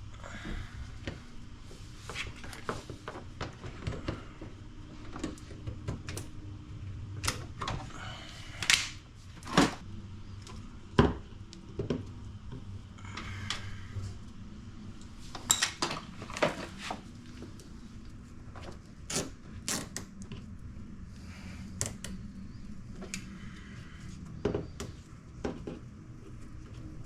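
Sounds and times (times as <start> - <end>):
small wires and tools clicking: 21.7 - 22.2.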